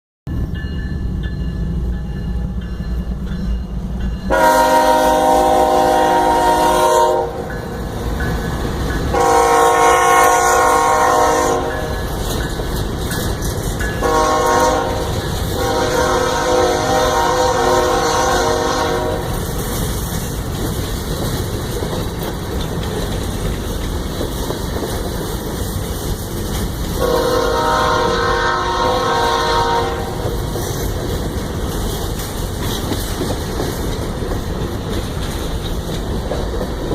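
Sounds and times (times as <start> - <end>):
low rumble of passing train: 0.3 - 36.9
train horn blasts: 4.3 - 7.6, 9.1 - 12.0, 14.0 - 19.4, 27.0 - 30.3.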